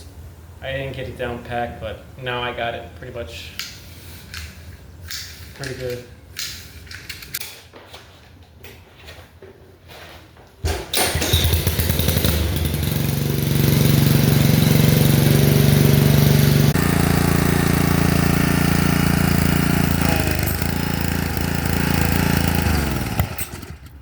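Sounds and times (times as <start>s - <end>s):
small engine running: 11.0s - 24.0s.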